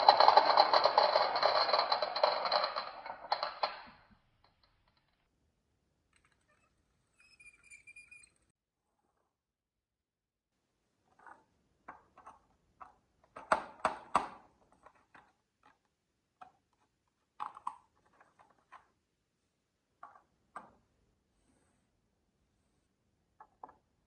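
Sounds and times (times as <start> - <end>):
marbles clacking on a track: 0.0 - 4.1.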